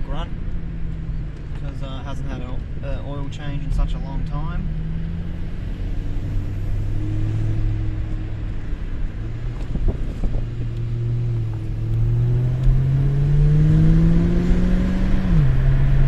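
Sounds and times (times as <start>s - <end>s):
car engine accelerating: 0.0s - 16.0s
gear shift: 9.4s - 14.7s.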